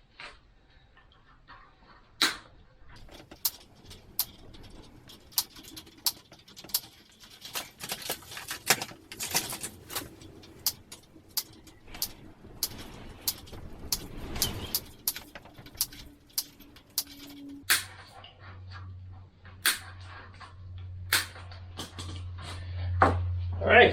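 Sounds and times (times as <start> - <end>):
wire mesh rustling: 2.9 - 18.0
wire cutters snipping wire: 3.0 - 18.0.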